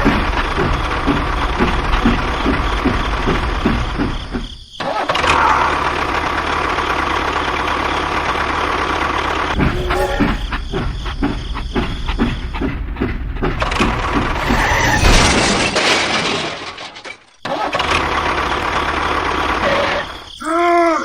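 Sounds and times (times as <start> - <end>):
engine knocking: 0.0 - 4.5, 5.4 - 9.6, 17.8 - 19.9.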